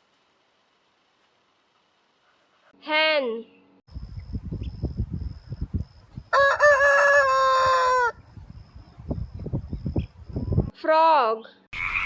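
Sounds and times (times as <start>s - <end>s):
chicken crowing: 6.3s - 8.2s.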